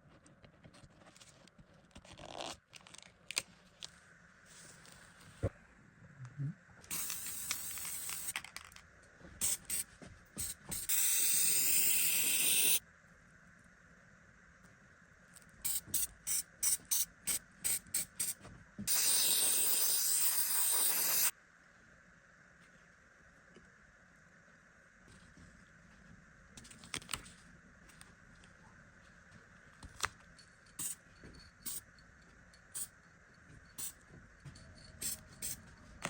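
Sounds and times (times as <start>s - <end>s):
hissing spray: 6.9s - 8.3s, 9.4s - 12.8s, 15.7s - 21.3s.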